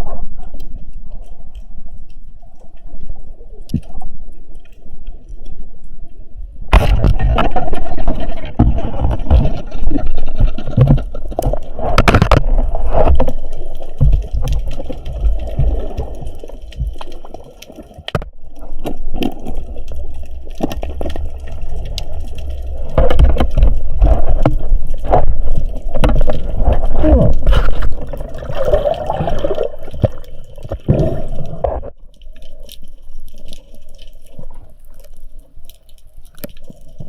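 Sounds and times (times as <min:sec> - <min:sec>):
water sloshing and gurgling: 0:00.0 - 0:37.0
low rumble: 0:18.2 - 0:29.9.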